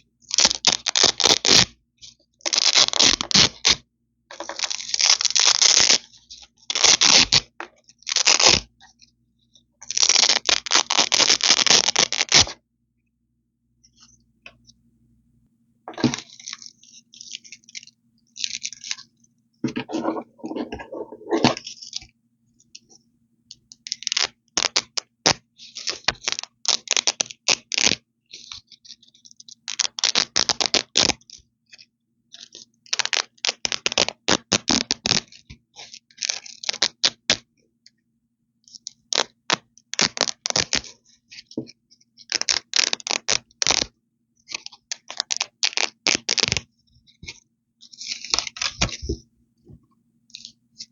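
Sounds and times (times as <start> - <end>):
velcro ripping apart: 0.3 - 1.7, 2.4 - 3.8, 4.4 - 6.1, 6.7 - 7.5, 8.1 - 8.7, 9.8 - 12.6, 24.0 - 28.0, 29.7 - 31.2, 36.2 - 37.4, 39.1 - 41.0, 42.3 - 43.9, 44.6 - 46.6.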